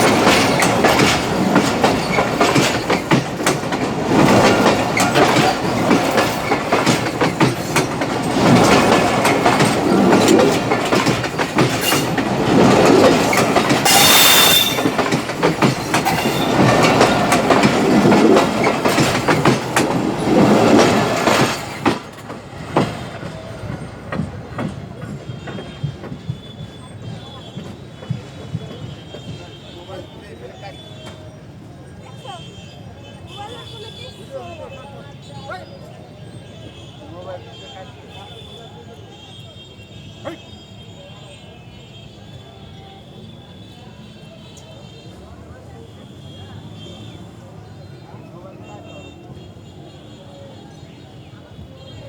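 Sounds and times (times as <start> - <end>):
train wheels rattling on rails: 0.0 - 52.0
high-pitched wheel screech: 13.9 - 15.0.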